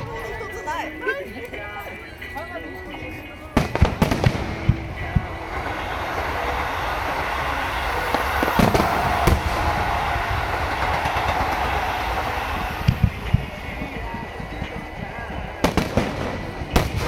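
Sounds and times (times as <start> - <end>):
firework shell bursts: 3.6 - 13.8
steady rushing noise: 4.0 - 17.0.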